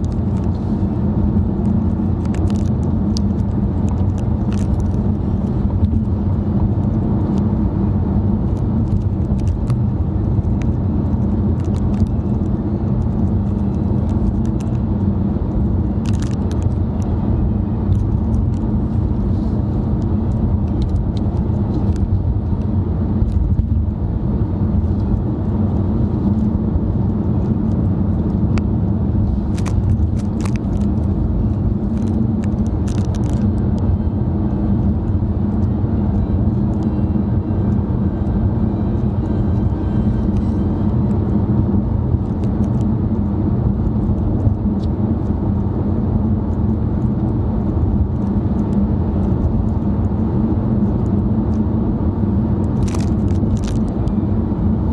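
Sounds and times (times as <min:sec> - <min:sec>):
car cabin road rumble: 0:00.0 - 0:54.9
small clicks and rattles: 0:02.1 - 0:06.2, 0:15.6 - 0:16.8, 0:29.5 - 0:33.8.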